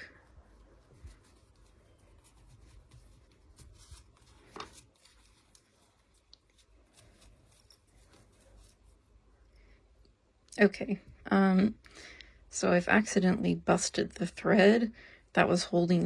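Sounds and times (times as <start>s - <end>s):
fabric rubbing: 0.0s - 9.2s.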